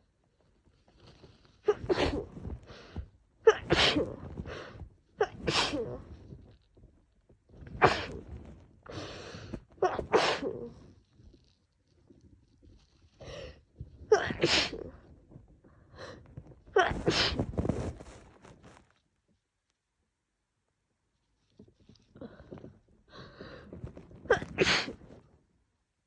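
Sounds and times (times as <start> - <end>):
quiet breaths: 0.0 - 9.8, 10.6 - 14.1, 14.9 - 18.8, 21.2 - 25.4
woman sneezing: 3.5 - 4.2, 5.2 - 6.0, 9.8 - 10.6, 14.1 - 14.9, 16.8 - 17.4.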